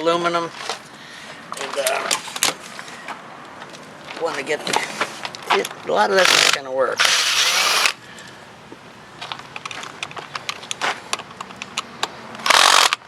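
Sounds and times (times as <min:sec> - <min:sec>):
loud rasping noise: 0:06.2 - 0:08.0.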